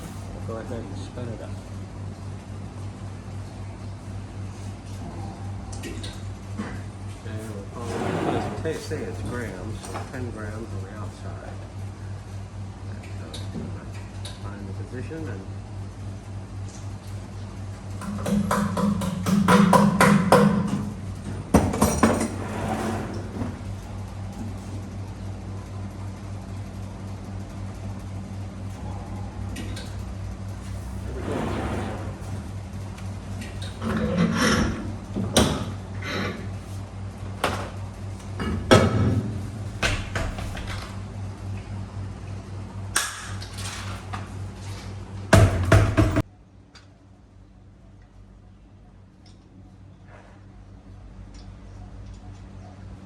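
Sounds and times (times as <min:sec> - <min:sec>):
steady low hum: 0:00.0 - 0:53.0
low hum: 0:22.4 - 0:35.2.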